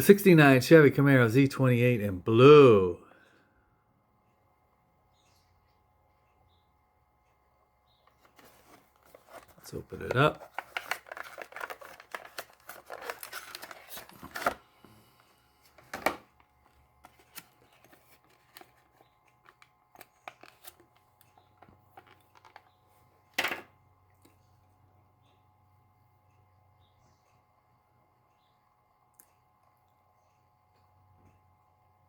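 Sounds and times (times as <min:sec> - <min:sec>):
plastic and card tearing: 0:08.4 - 0:14.6.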